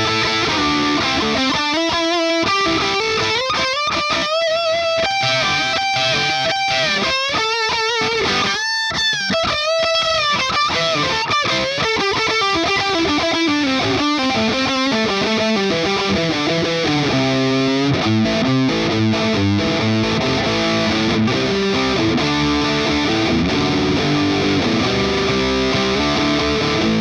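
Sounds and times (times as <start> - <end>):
distorted electric guitar lead: 0.0 - 27.0.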